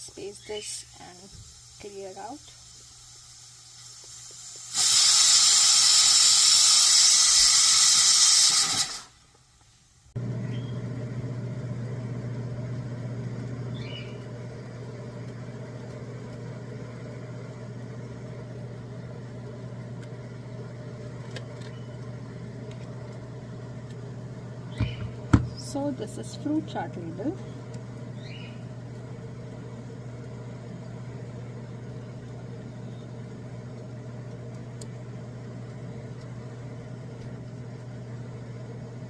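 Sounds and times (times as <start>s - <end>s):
pressure cooker whistle: 4.0s - 9.2s
steady low hum: 10.0s - 39.0s.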